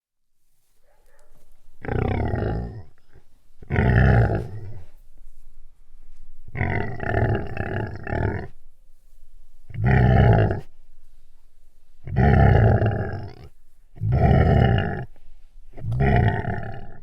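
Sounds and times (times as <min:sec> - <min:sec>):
animal growling: 0:01.8 - 0:05.0, 0:06.5 - 0:08.6, 0:09.7 - 0:10.8, 0:12.0 - 0:17.0.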